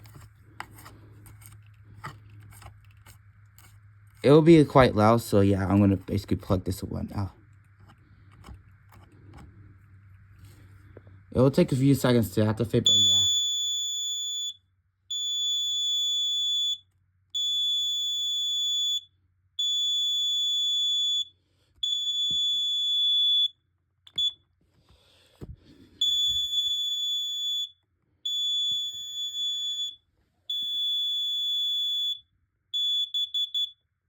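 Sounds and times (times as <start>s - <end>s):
gas alarm long beeps: 12.8s - 24.4s, 26.0s - 34.0s.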